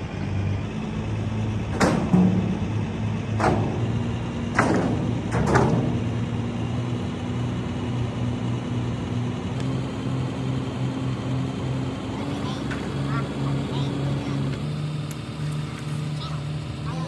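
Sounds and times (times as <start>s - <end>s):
engine running with pulsing hum: 0.0s - 17.0s
sharp knocks: 0.8s - 9.5s.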